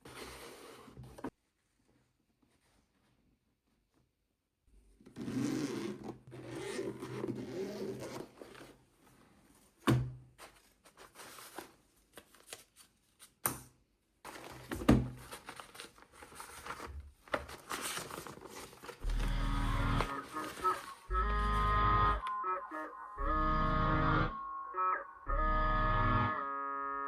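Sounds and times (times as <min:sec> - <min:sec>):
packaging scraping and crinkling: 0:10.4 - 0:12.9, 0:14.3 - 0:21.1.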